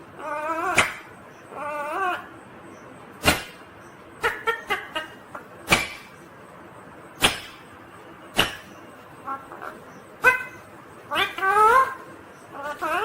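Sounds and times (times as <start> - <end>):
parakeet chirping: 8.5 - 13.0.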